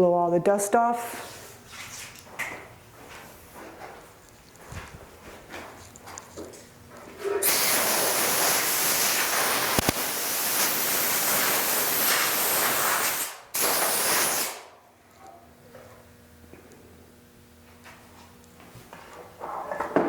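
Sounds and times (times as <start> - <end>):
compressed air blow gun hissing: 7.4 - 14.7
sharp click: 9.8 - 10.0.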